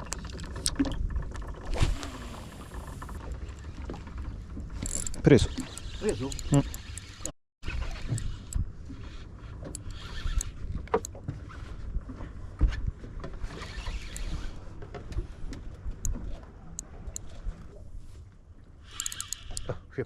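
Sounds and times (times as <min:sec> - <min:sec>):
low rumble of boat: 0:00.0 - 0:20.0
fishing reel whirring: 0:01.4 - 0:03.2, 0:04.8 - 0:10.6, 0:13.5 - 0:14.6, 0:18.8 - 0:19.7.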